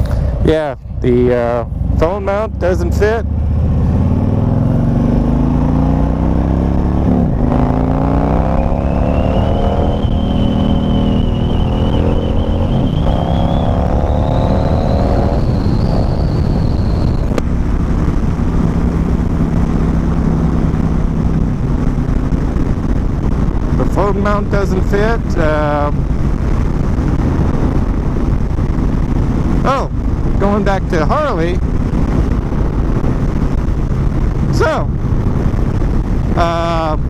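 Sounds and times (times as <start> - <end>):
motorcycle engine accelerating: 1.1 - 37.0
wind on microphone: 3.4 - 37.0
thin high whistle: 8.5 - 17.3.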